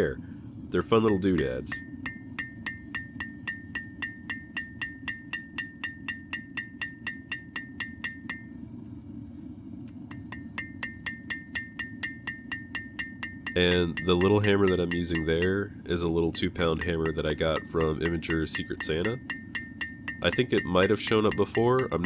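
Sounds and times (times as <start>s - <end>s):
steady low rush: 0.0s - 22.0s
hammer striking steel on anvil: 1.1s - 8.6s, 10.1s - 22.0s.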